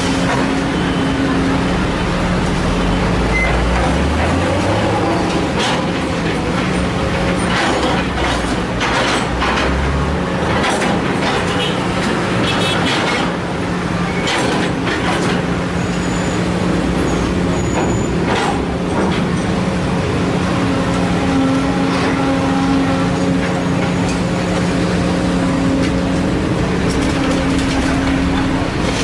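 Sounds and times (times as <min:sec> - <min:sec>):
excavator diesel engine running: 0:00.0 - 0:29.0
soil clattering and scraping: 0:25.8 - 0:29.0.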